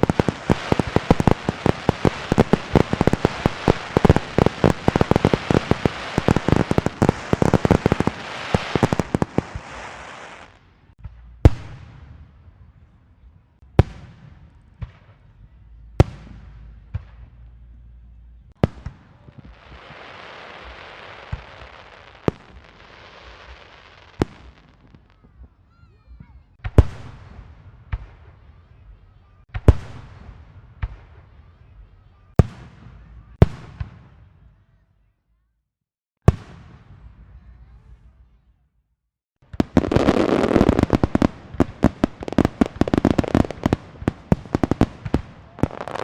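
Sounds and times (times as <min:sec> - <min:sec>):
hissing crackle: 0:00.0 - 0:10.7
firecrackers crackling: 0:00.0 - 0:12.3, 0:18.5 - 0:25.4, 0:39.5 - 0:46.0
firework bangs: 0:00.0 - 0:12.4, 0:18.5 - 0:25.4, 0:39.5 - 0:46.0.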